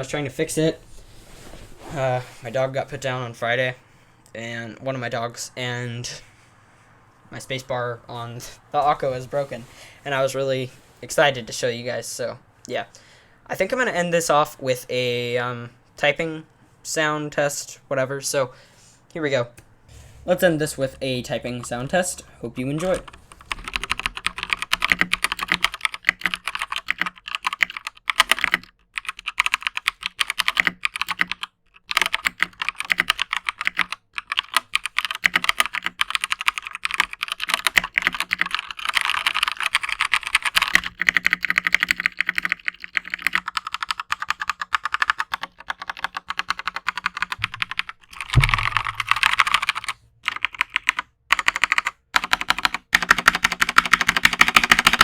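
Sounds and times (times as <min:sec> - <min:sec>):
mechanical keyboard keystroke clacks: 0:22.8 - 0:55.0
low thump: 0:47.4 - 0:50.1.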